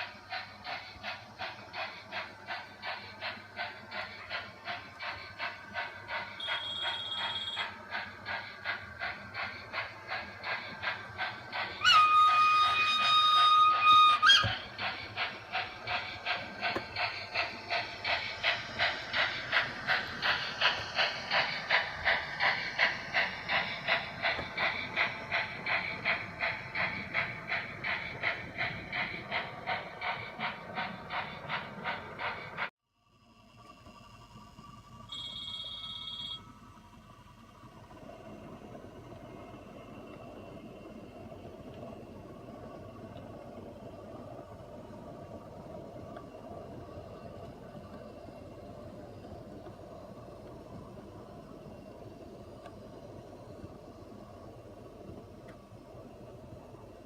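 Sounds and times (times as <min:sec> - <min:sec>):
model steam train chuffing: 0:00.0 - 0:57.0
train whistle: 0:06.4 - 0:07.8, 0:11.8 - 0:14.7, 0:35.1 - 0:36.4.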